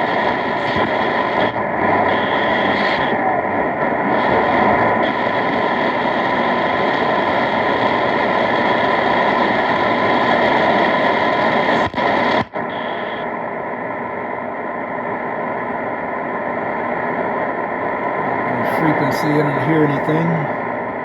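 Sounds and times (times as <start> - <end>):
radio static hiss: 0.0 - 13.4, 18.5 - 20.6.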